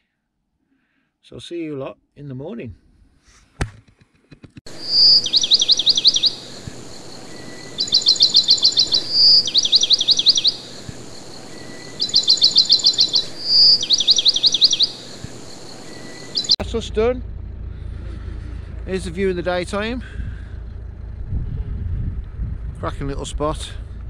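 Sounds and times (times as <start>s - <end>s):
outdoor background: 0.0s - 24.0s
bird song whistle and rattling run: 4.7s - 16.7s.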